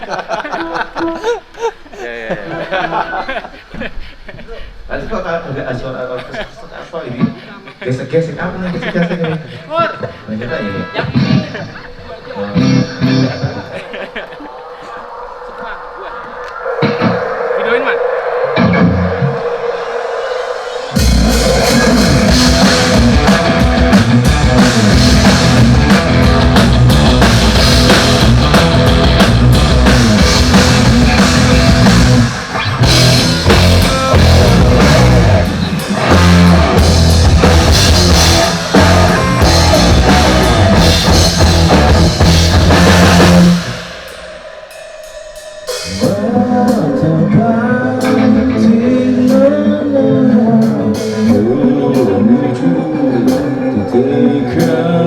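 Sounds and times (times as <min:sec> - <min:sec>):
rock band playing loud: 0:12.6 - 0:13.6, 0:18.2 - 0:44.3.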